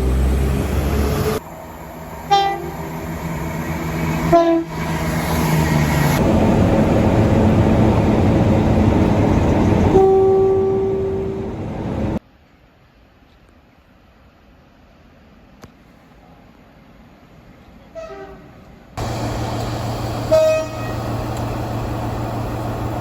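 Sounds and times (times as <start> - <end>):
rumble of passing trains: 0.0 - 12.2, 14.2 - 23.0
train horns: 2.2 - 3.0, 4.1 - 4.9, 9.8 - 11.6, 17.9 - 19.2, 20.1 - 21.2.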